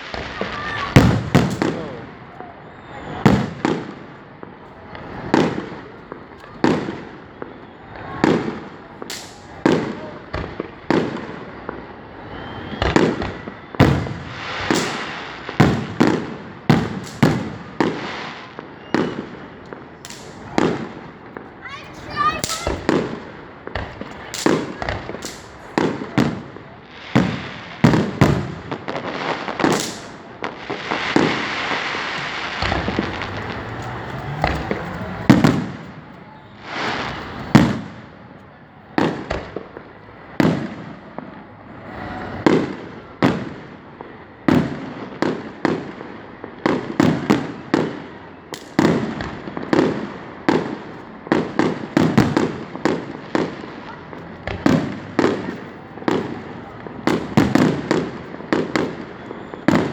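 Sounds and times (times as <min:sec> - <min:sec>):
fireworks bangs and booms: 0:00.0 - 0:59.9
fireworks hissing: 0:04.9 - 0:38.0.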